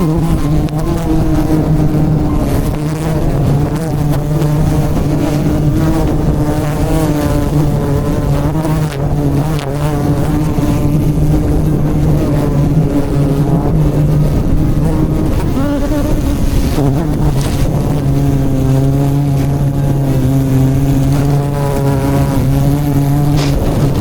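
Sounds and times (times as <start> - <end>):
bees buzzing loudly: 0.0 - 24.0.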